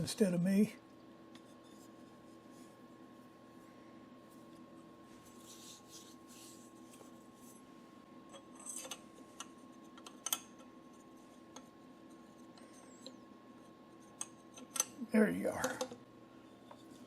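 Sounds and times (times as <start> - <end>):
faint steady hum: 0.0 - 17.0
soft metal scraping: 1.4 - 3.0.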